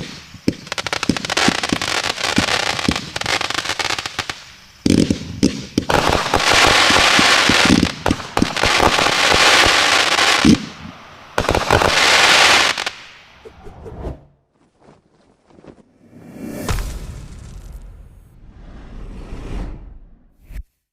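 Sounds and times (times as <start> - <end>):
firework crackling: 0.0 - 13.4.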